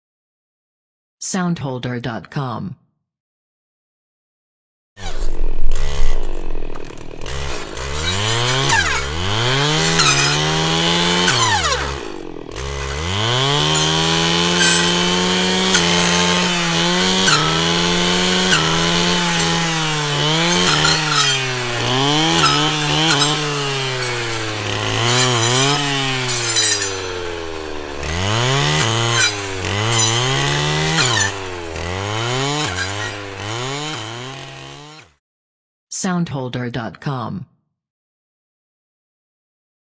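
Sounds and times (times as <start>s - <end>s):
brush cutter engine revving: 5.0s - 35.2s
harsh rasp of cutting branches: 5.0s - 35.2s.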